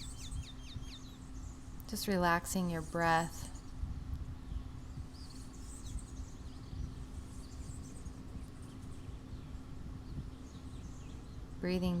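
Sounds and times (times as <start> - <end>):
faint high bird chirps: 0.0 - 1.7
wind on microphone: 0.0 - 12.0.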